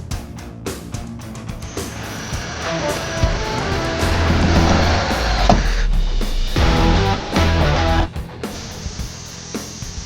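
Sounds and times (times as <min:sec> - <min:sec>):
background music with loud bass: 0:00.0 - 0:10.0.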